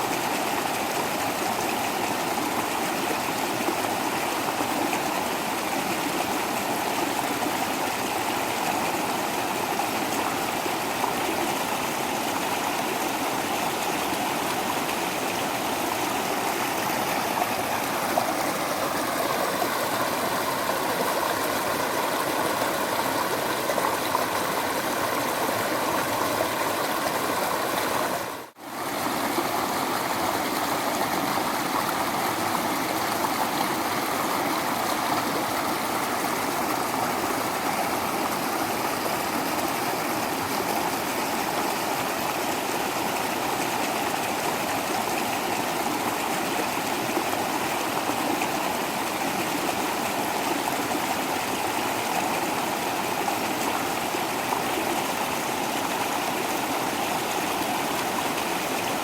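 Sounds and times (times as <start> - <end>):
waterfall rushing: 7.9 - 44.6.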